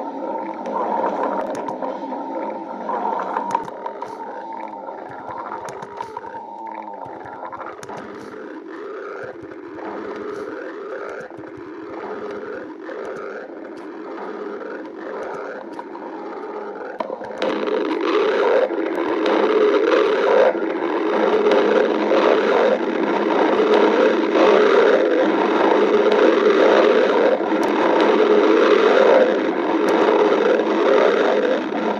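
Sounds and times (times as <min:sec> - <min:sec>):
stomach growling: 0:00.0 - 0:31.9.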